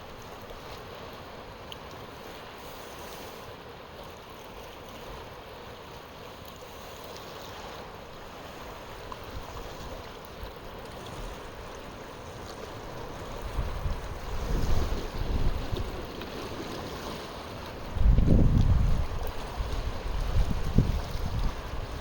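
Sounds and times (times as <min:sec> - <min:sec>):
moving water: 0:00.0 - 0:22.0
wind buffeting microphone: 0:13.1 - 0:22.0.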